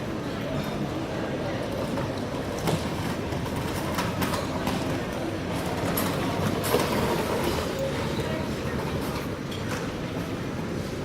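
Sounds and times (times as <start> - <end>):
rolling rumble and din: 0.0 - 11.0
scattered clicks and knocks: 1.7 - 8.0, 8.7 - 10.0.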